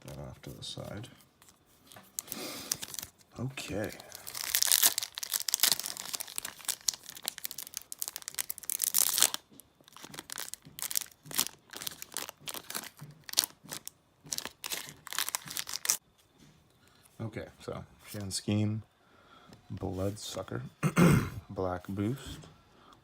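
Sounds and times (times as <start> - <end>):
trading cards rustling and clicking: 0.0 - 16.0
foil wrapper crinkling and tearing: 1.4 - 16.0.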